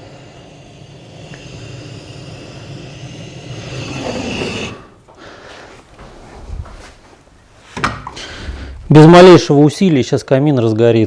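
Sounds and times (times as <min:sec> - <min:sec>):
rushing rumble of flame: 0:00.0 - 0:05.0.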